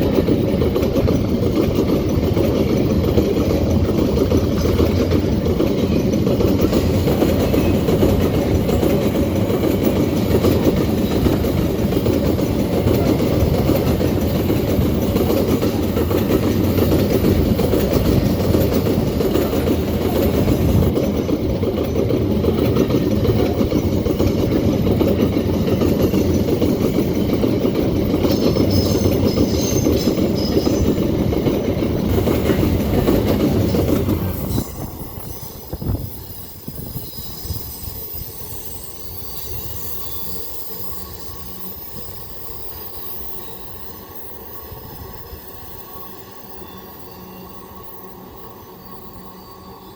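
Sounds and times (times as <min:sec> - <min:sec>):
freight wagon wheels rumbling on rail: 0:00.0 - 0:49.9
high wheel squeal: 0:28.2 - 0:31.2, 0:33.5 - 0:49.9.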